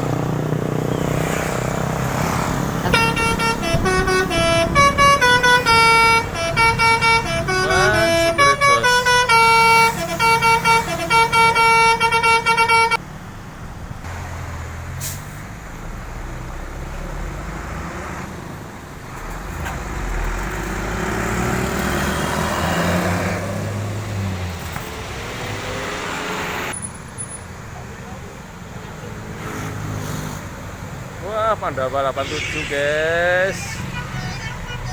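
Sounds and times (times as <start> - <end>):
passing traffic noise: 0.0 - 34.9
bus horn playing melody: 2.8 - 13.0, 33.8 - 34.9.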